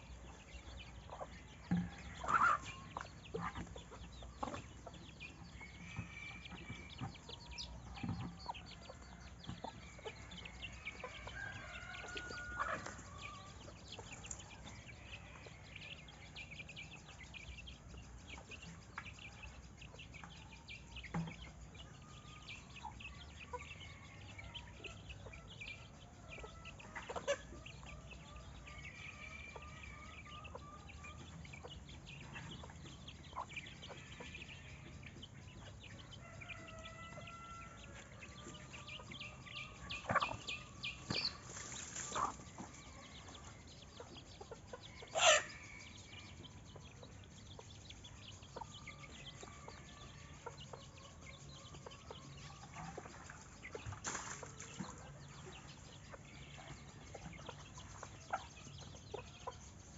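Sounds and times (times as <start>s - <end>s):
chickens clucking: 0.0s - 59.9s
small birds chirping: 0.0s - 59.9s.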